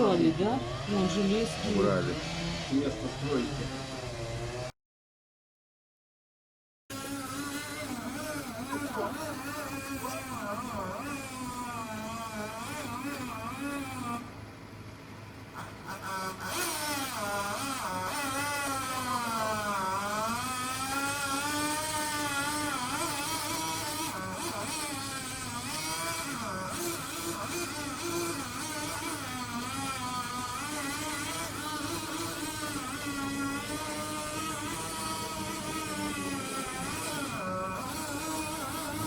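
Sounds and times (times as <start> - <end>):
chainsaw running: 0.0 - 4.7, 6.9 - 14.4, 15.5 - 39.0.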